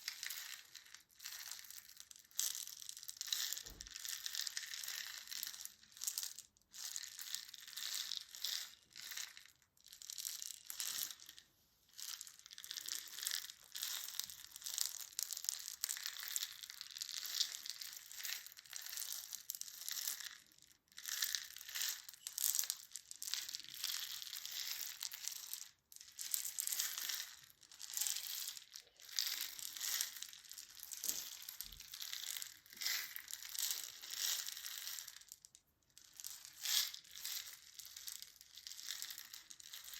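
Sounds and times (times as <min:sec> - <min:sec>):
crinkling and crumpling: 0:00.0 - 0:06.1, 0:21.2 - 0:35.4.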